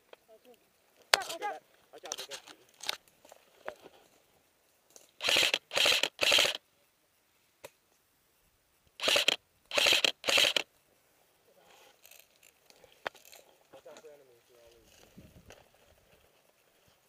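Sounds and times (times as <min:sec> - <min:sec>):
airsoft rifle firing bursts: 0:05.2 - 0:06.6, 0:09.0 - 0:10.7.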